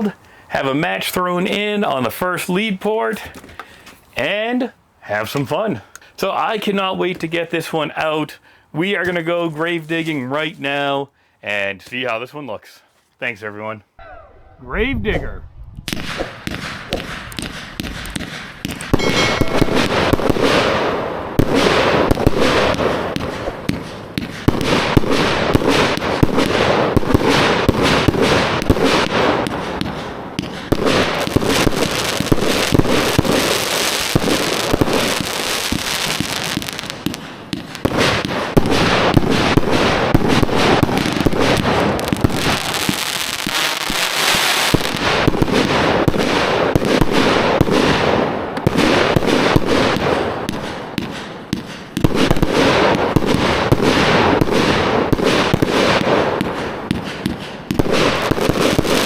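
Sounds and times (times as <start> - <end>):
firework barrage: 15.8 - 59.0.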